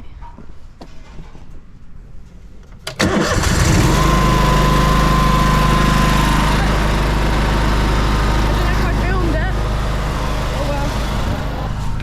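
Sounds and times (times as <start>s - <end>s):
engine starting and running: 2.8s - 12.0s.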